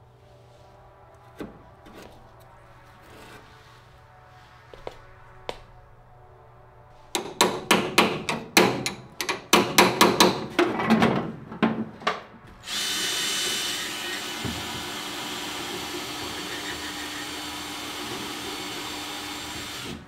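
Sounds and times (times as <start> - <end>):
power tool running: 12.6 - 20.0.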